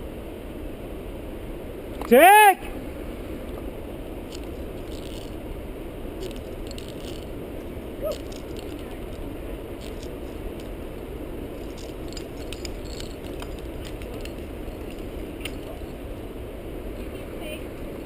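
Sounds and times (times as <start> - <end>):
steady low rush: 0.0 - 18.0
metal gear clinking: 4.3 - 5.4, 6.2 - 7.3, 11.6 - 16.0.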